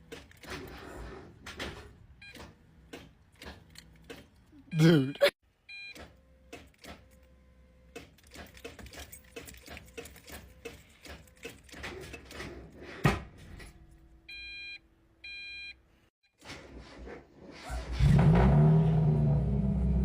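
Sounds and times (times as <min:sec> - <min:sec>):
short electronic beeps: 0:04.7 - 0:06.0.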